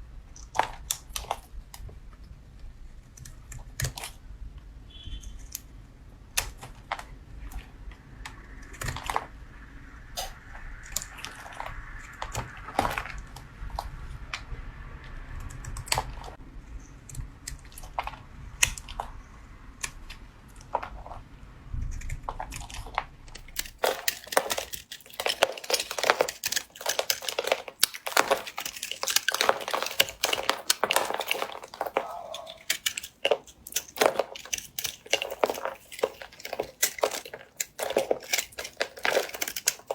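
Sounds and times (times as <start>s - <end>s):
faint low hum: 0.0s - 39.9s
blade cutting soap: 23.4s - 39.9s.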